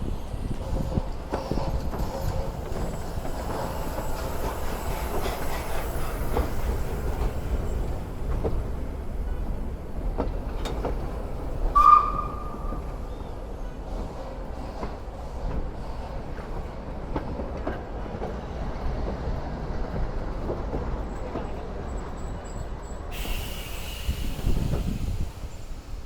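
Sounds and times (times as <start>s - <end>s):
train rumble: 0.0s - 26.0s
wheels clacking over rail joints: 0.4s - 22.0s
high squeal: 0.8s - 8.2s, 11.6s - 13.3s.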